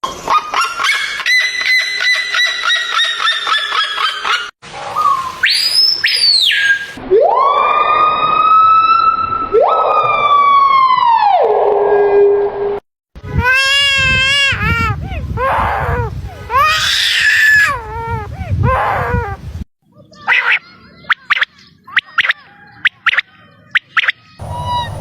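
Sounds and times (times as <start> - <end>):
siren-like animal wails: 7.0 - 12.4, 24.4 - 25.0
pulsed animal calls: 24.4 - 25.0.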